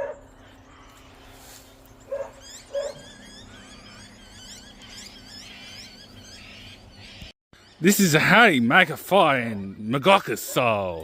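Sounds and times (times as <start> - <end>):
dog barking: 0.0 - 0.3, 2.1 - 3.0.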